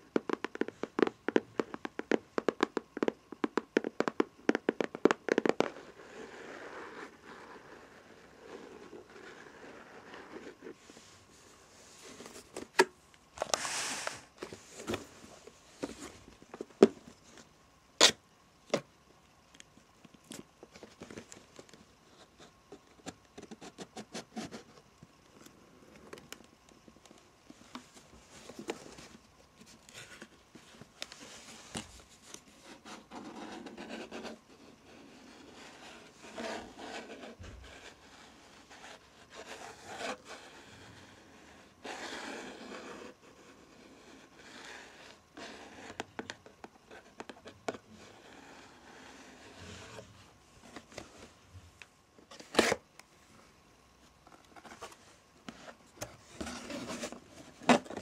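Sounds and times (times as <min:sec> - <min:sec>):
cardboard and paper rustling: 0:27.0 - 0:34.3, 0:54.2 - 0:58.0.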